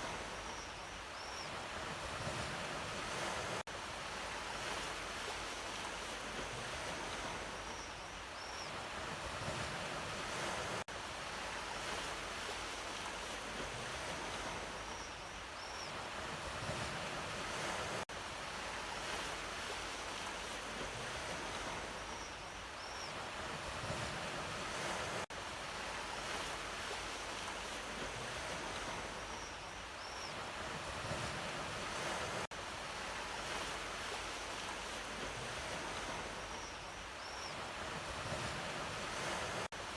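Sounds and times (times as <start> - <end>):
ocean waves breaking: 37.8 - 39.9.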